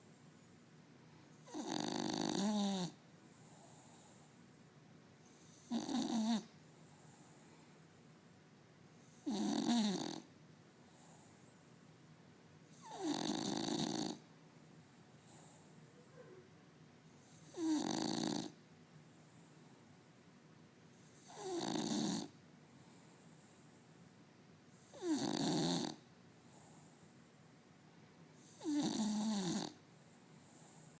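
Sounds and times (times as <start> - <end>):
dog snoring: 1.4 - 4.3, 5.3 - 7.3, 9.0 - 10.3, 12.7 - 14.3, 17.2 - 18.6, 21.0 - 22.4, 24.7 - 26.8, 28.4 - 29.8.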